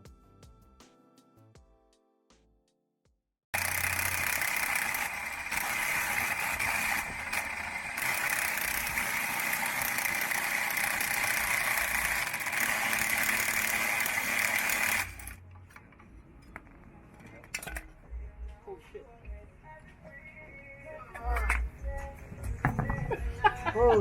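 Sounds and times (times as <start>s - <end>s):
power tool cutting steel: 3.6s - 15.4s.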